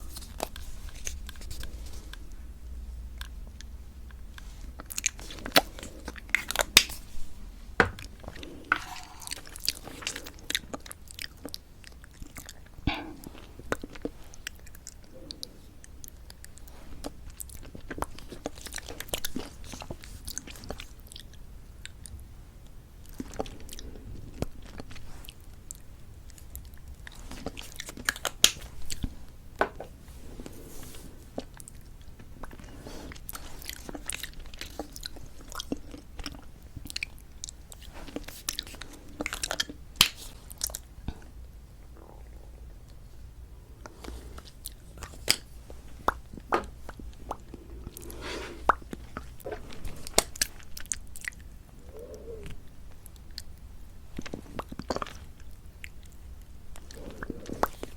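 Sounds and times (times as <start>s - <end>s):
soft rubbing: 4.3s - 10.4s, 47.5s - 50.2s
lips smacking: 46.1s - 53.5s.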